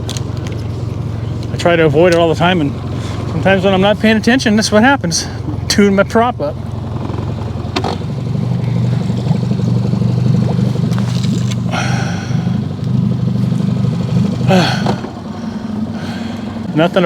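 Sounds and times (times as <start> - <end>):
outboard motor running: 0.0 - 17.0.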